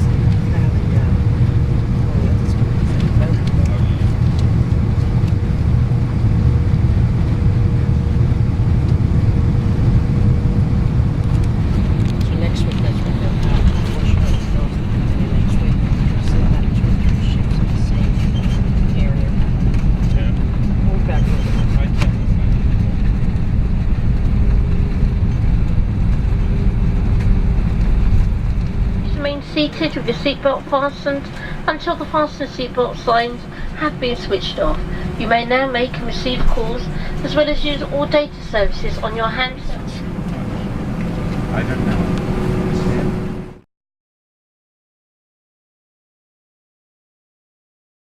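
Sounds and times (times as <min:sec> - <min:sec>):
faint steady whine: 0:00.0 - 0:43.4
airliner cabin rumble: 0:00.0 - 0:43.6
faint steady hum: 0:23.2 - 0:42.0.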